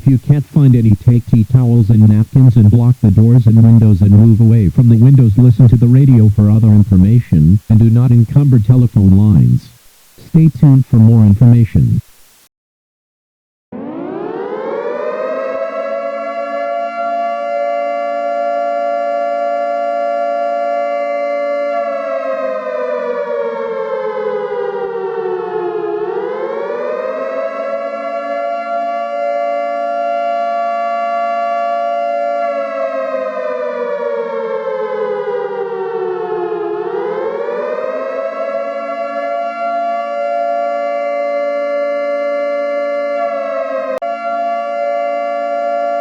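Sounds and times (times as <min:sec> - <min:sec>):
siren sliding in pitch: 0:13.7 - 0:46.0.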